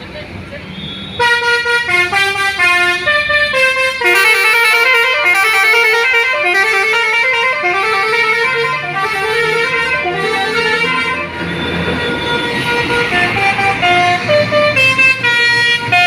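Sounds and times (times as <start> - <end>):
bus musical horn playing a tune: 1.1 - 16.0.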